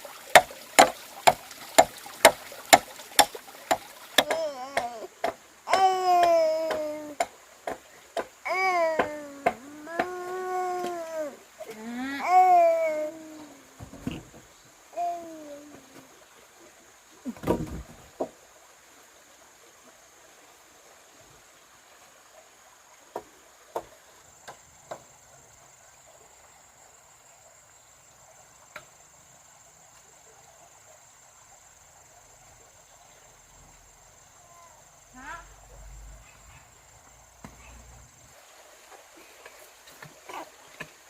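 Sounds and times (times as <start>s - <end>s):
insects chirring: 0.0s - 41.0s
sharp knocks: 0.4s - 10.2s.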